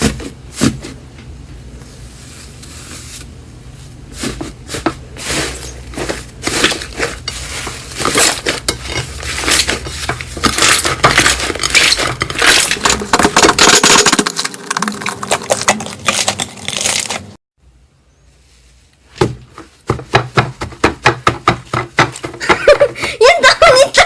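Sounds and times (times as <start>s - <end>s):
slime squeezed crackling: 10.5s - 17.4s.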